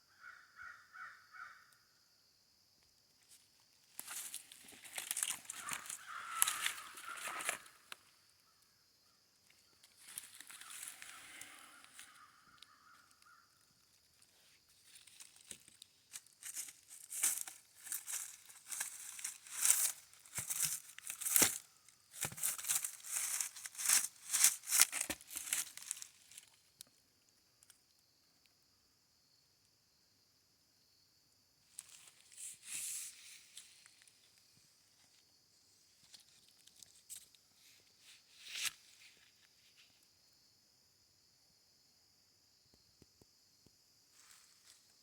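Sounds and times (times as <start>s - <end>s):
footsteps crunching through dry leaves: 4.0s - 7.8s, 14.9s - 26.3s.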